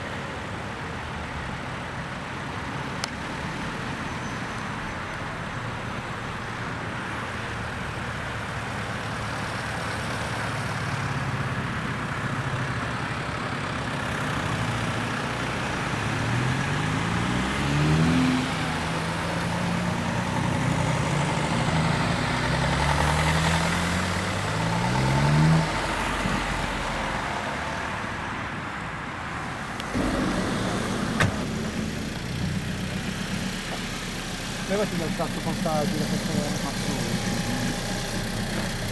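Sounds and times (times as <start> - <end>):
car engines running: 0.0 - 38.9
engine revving: 14.2 - 27.7, 29.8 - 38.9.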